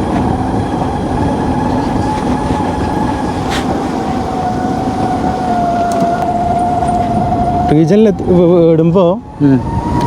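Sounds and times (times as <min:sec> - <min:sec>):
wind and road noise: 0:00.0 - 0:10.0.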